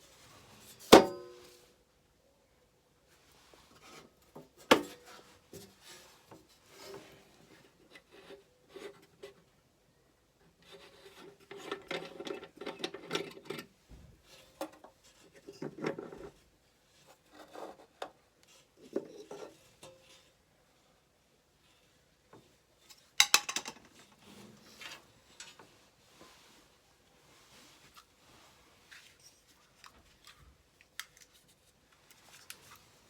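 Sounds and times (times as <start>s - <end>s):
handling noise rubbing and scraping: 23.9s - 30.4s.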